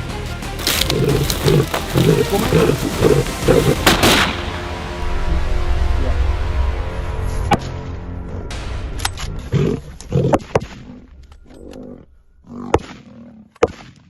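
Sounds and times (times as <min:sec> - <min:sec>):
background music: 0:00.0 - 0:14.0
lion growling: 0:00.7 - 0:04.2, 0:08.2 - 0:13.6
rifle shot: 0:03.8 - 0:04.5.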